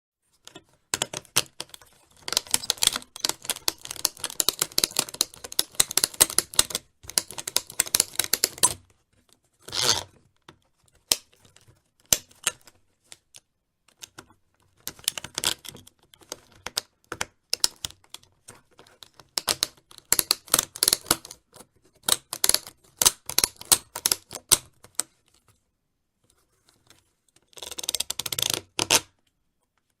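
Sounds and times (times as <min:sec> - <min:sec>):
plastic binding ratchet clicks: 0:00.5 - 0:08.8.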